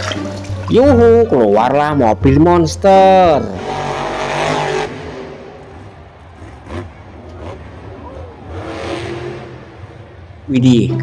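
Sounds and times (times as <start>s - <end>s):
car engine: 2.2s - 11.0s.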